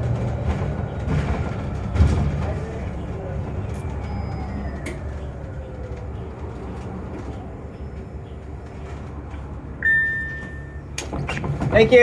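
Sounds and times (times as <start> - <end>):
bus engine and road rumble: 0.0 - 12.0
loud electronic chime: 9.8 - 10.8.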